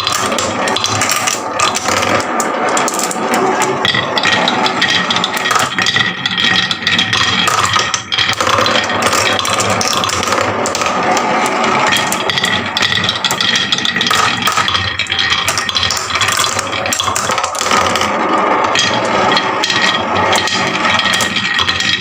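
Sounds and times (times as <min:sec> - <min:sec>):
marbles rolling down wooden run: 0:00.0 - 0:22.0.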